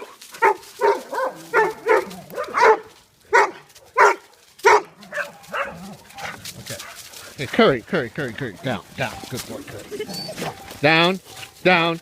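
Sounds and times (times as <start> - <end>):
dog barking: 0.0 - 7.1.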